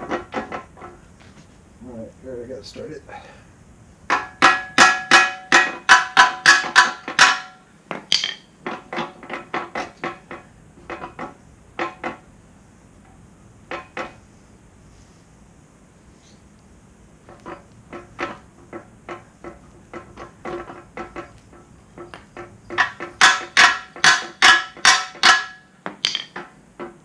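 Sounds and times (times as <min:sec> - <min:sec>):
hammer striking metal: 0:04.1 - 0:08.5, 0:22.7 - 0:26.5.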